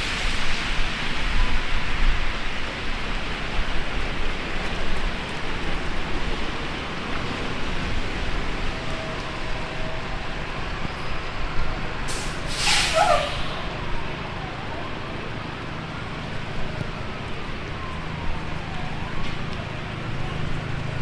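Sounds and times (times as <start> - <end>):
heavy rain: 0.0 - 21.0
traffic: 0.0 - 21.0
faint siren wail: 5.1 - 12.1, 12.9 - 21.0
air brake hiss and squeal: 12.1 - 13.6.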